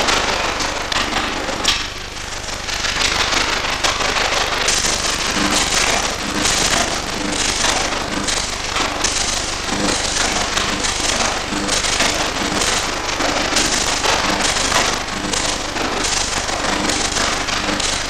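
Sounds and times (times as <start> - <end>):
arc welding crackling: 0.0 - 18.0
sharp welding pops: 4.1 - 18.0.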